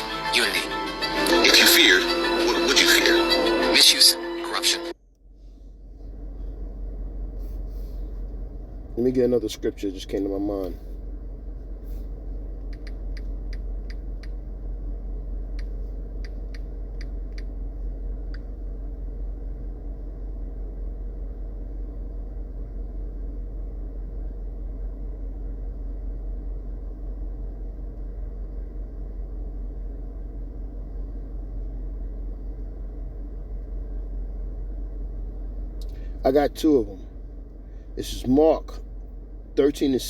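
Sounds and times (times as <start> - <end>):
low hum: 0.0 - 40.0
low rumble: 0.0 - 40.0
light clicks: 12.6 - 14.4.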